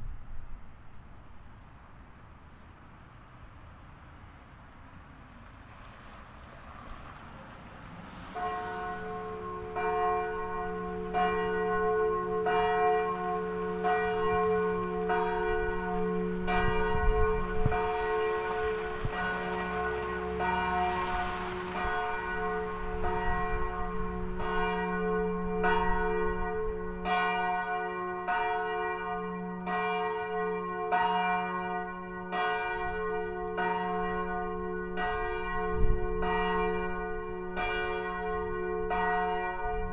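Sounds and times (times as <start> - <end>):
church bell ringing: 8.3 - 39.9.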